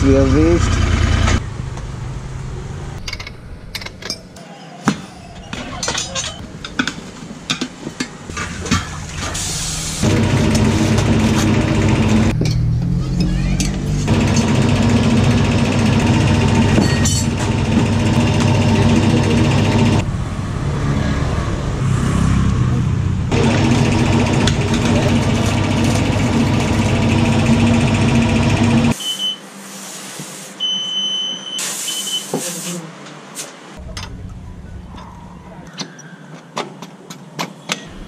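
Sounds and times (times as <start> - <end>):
engine running: 0.0 - 4.0, 8.3 - 29.0.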